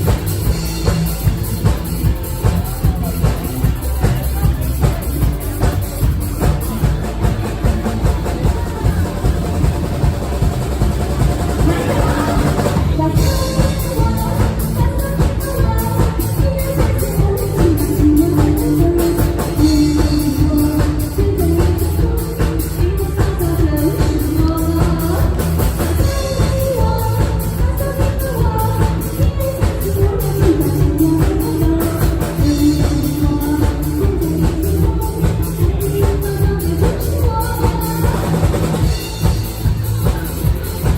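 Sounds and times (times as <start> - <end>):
drum kit beat: 0.0 - 40.9
live band playing pop-rock: 0.0 - 40.9
person singing: 11.4 - 40.9.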